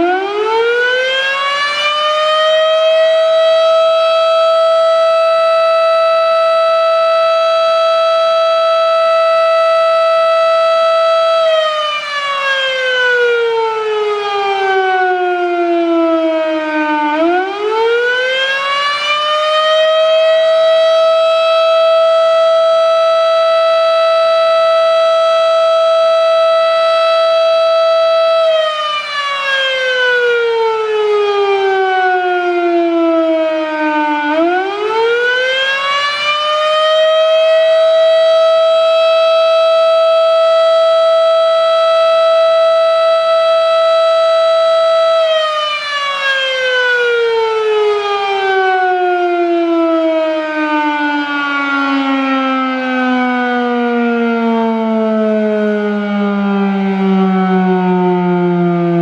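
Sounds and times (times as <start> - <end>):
warning siren wailing: 0.0 - 59.0.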